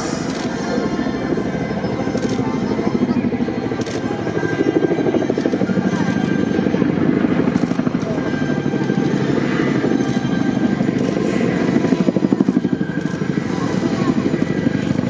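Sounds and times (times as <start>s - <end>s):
helicopter engine whine: 0.0s - 15.0s
helicopter rotors beating: 0.0s - 15.0s.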